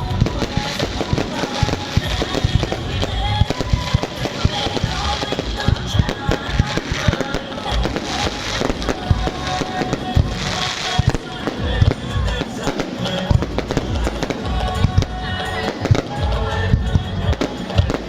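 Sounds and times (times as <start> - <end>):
fireworks bangs: 0.0 - 18.0
music playing: 0.0 - 18.0.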